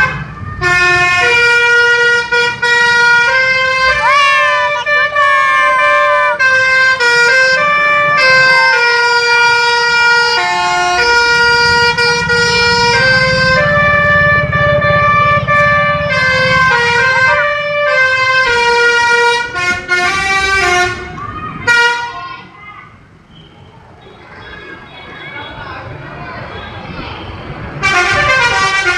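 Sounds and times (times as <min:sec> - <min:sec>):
musical air horn playing a tune: 0:00.0 - 0:22.2, 0:27.8 - 0:28.9
bus engine rumble: 0:00.0 - 0:28.9.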